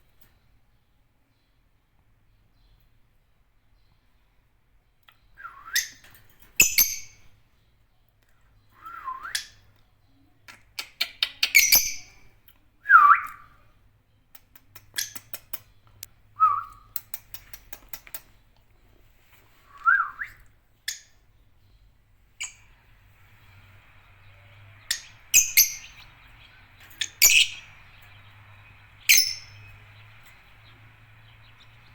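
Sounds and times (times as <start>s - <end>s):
birds chirping shrilly: 22.4s - 31.9s.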